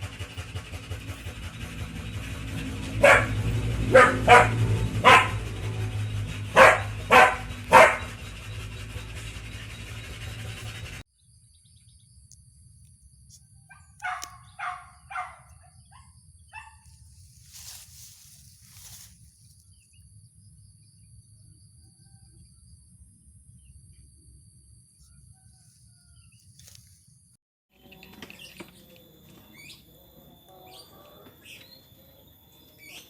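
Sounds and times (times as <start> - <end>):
dogs barking: 0.8 - 11.0, 13.7 - 16.9.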